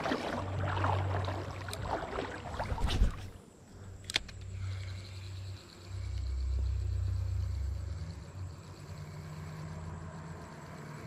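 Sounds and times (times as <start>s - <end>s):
creek water splashing: 0.0s - 3.4s.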